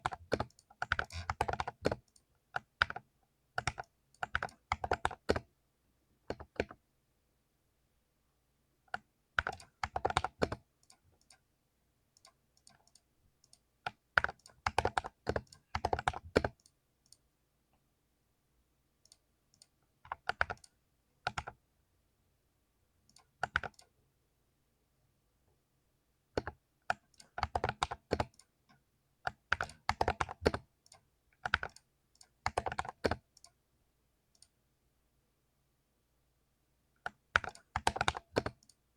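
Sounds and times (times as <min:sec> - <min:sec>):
mechanical keyboard typing: 0:00.0 - 0:05.5, 0:06.3 - 0:06.8, 0:08.9 - 0:11.4, 0:12.2 - 0:17.2, 0:19.6 - 0:21.6, 0:23.1 - 0:23.9, 0:26.4 - 0:28.5, 0:29.2 - 0:33.5, 0:37.0 - 0:38.8.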